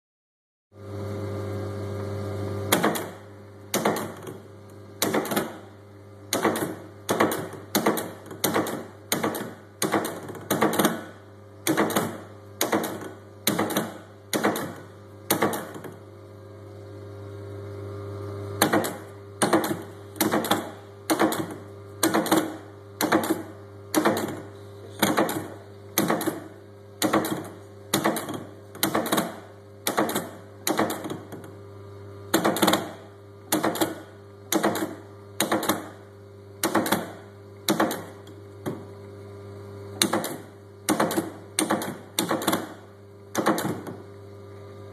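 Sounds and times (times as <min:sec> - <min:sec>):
printing press motor hum: 0:00.8 - 0:44.9
sharp mechanical knocking: 0:02.7 - 0:04.4, 0:05.0 - 0:05.7, 0:06.3 - 0:16.0, 0:18.6 - 0:31.5, 0:32.3 - 0:36.0, 0:36.6 - 0:38.8, 0:40.0 - 0:44.0.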